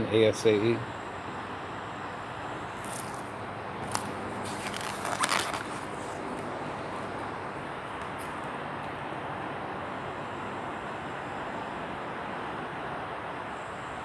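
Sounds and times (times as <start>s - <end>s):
background hum: 0.0s - 14.0s
paper pages rustling: 2.8s - 7.2s.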